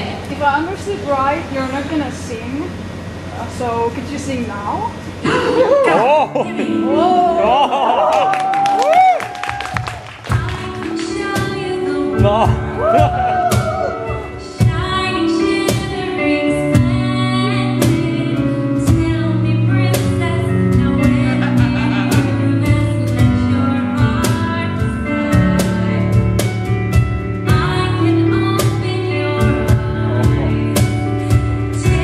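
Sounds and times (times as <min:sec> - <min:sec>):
sustained chords: 0:05.2 - 0:08.6
woman singing: 0:06.4 - 0:07.8, 0:09.9 - 0:26.7, 0:27.4 - 0:32.0
drum beat: 0:09.0 - 0:11.6, 0:12.2 - 0:14.8, 0:20.8 - 0:22.4.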